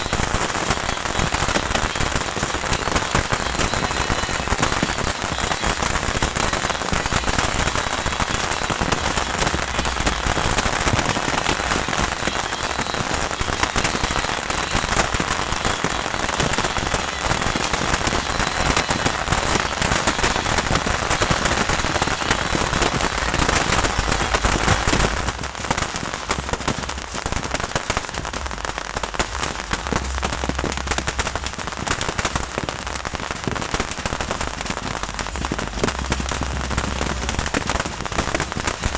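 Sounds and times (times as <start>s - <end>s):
fireworks crackling: 0.0s - 38.9s.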